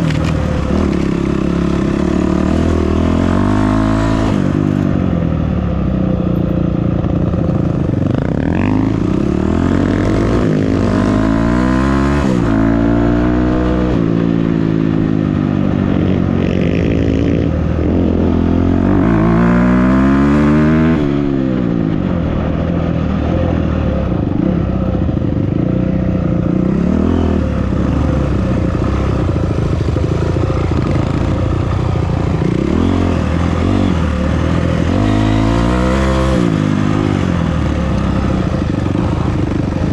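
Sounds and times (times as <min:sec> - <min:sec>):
off-road vehicle engine revving: 0:00.0 - 0:04.8, 0:18.0 - 0:21.1, 0:32.2 - 0:39.9.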